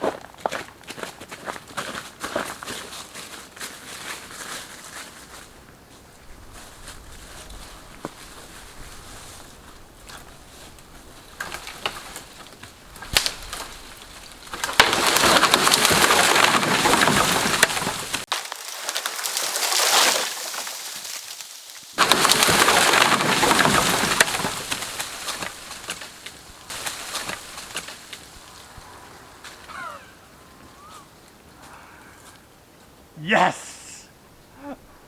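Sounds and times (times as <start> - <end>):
tree crashing through branches: 6.5 - 30.0.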